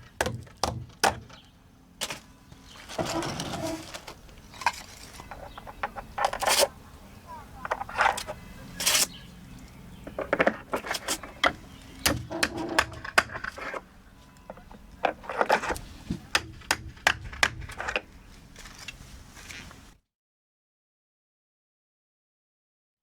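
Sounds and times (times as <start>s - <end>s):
scraping plastic: 0.0s - 6.8s, 7.6s - 9.2s, 10.1s - 20.0s.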